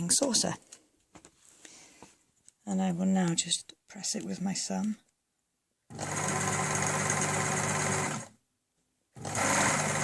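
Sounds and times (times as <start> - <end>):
sewing machine motor hum: 5.9 - 8.3, 9.2 - 10.0.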